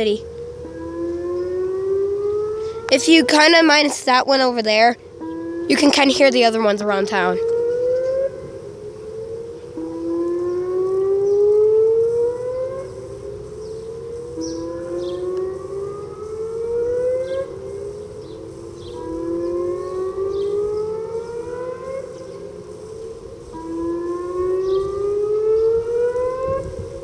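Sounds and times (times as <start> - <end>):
tornado warning sirens wailing: 0.0 - 27.0.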